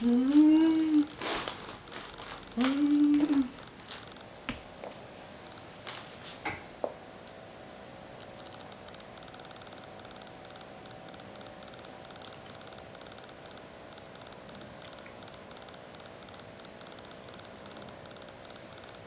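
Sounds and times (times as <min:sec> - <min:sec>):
person humming: 0:00.0 - 0:01.2, 0:02.6 - 0:03.6.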